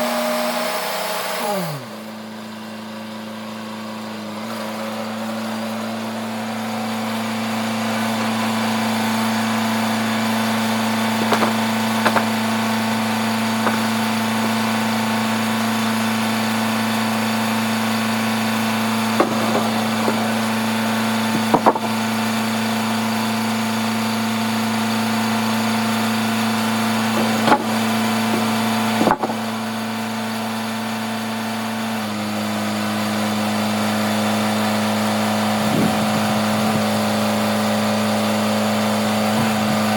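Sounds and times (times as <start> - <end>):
sawmill machinery engine drone: 0.0 - 39.9
sharp knocks and clunks: 11.1 - 14.8, 19.1 - 22.2, 27.0 - 29.7.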